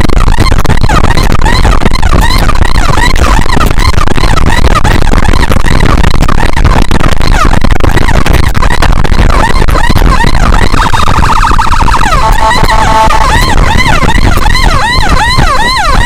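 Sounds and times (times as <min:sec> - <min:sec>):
sirens yelping: 0:11.9 - 0:14.1.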